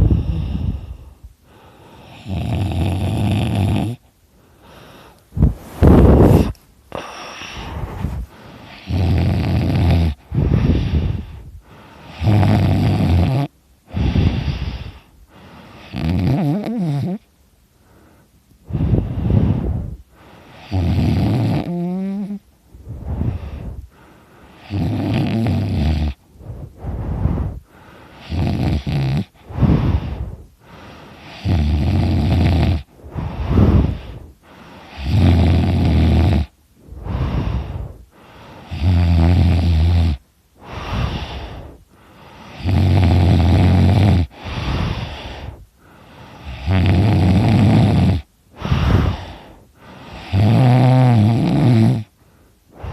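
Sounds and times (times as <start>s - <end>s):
quiet breaths: 0.0s - 52.9s
man snoring loudly: 2.0s - 4.1s, 8.6s - 11.3s, 12.1s - 14.9s, 15.8s - 17.3s, 20.6s - 22.4s, 24.6s - 26.2s, 28.2s - 30.2s, 31.2s - 34.2s, 34.9s - 37.8s, 38.7s - 41.7s, 42.5s - 45.6s, 46.4s - 49.4s, 50.1s - 52.1s.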